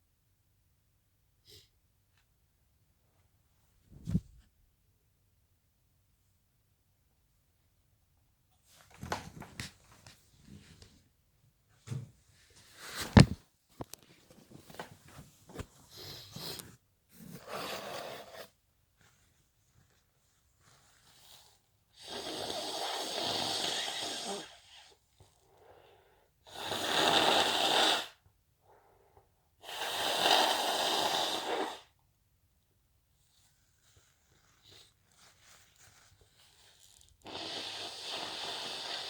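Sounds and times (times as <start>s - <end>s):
person blowing air through nose: 12.9s - 13.4s, 22.0s - 24.9s, 26.5s - 28.2s, 29.6s - 31.9s, 36.4s - 39.0s.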